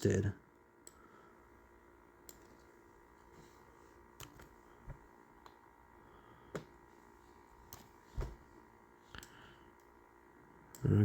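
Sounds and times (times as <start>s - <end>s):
faint computer clicks: 9.1s - 9.9s.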